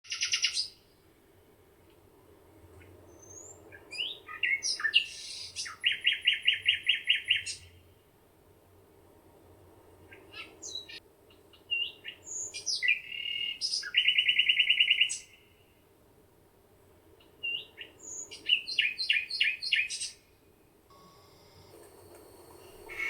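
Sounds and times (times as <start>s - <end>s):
songbird chirping and trilling: 0.1s - 0.9s, 2.8s - 7.8s, 10.0s - 15.7s, 17.1s - 20.5s, 22.4s - 23.0s.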